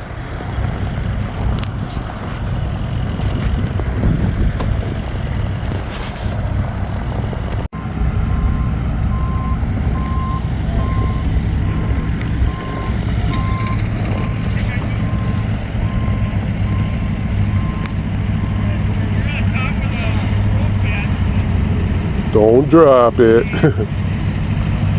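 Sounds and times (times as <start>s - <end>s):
heavy vehicle engine running: 0.0s - 24.9s
reversing alarm beeping: 7.8s - 20.8s.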